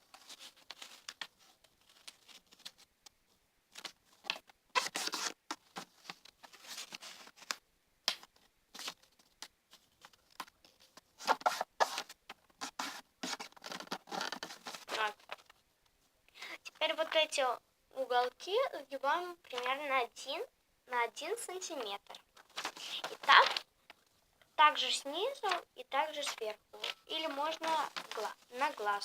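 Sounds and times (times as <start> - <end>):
paper folds crackling: 0.0 - 2.9, 3.7 - 15.6, 21.7 - 24.1, 24.8 - 29.0
paper rustling and crinkling: 0.0 - 2.9, 3.7 - 7.6, 8.2 - 15.6, 21.7 - 24.2, 24.8 - 29.0.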